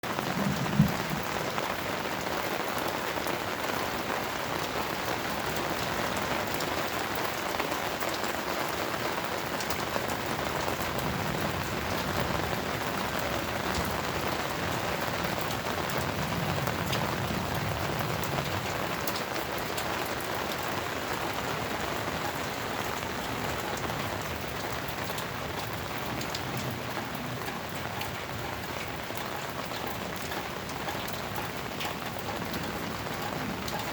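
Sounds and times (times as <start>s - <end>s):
steady rain falling: 0.0s - 33.9s.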